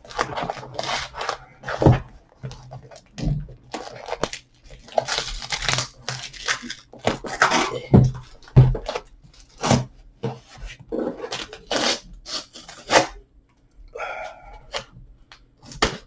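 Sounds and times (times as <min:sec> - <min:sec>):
cardboard box tearing: 0:00.1 - 0:02.6, 0:03.3 - 0:13.2
box thumps: 0:07.1 - 0:09.0.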